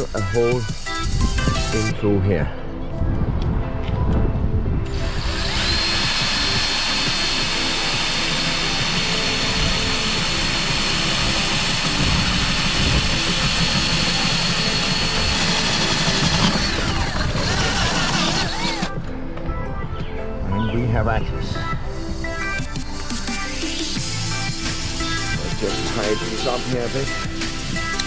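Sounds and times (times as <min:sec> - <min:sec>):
power drill whining: 0:00.0 - 0:01.9, 0:04.9 - 0:19.0, 0:21.5 - 0:28.0.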